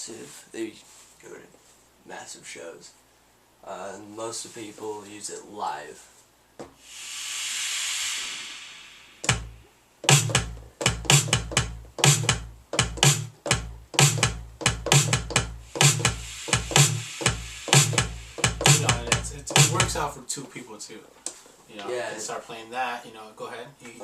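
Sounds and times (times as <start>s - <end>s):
electronic hiss: 6.8s - 9.9s, 15.6s - 19.5s
electronic drum beat: 9.2s - 20.2s.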